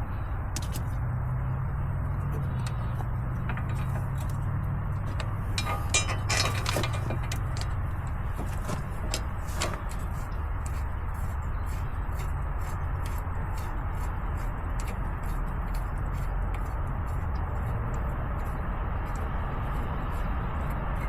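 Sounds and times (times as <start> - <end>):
steady low hum: 0.0 - 21.0
hand wrench clicking and knocking: 5.0 - 10.1.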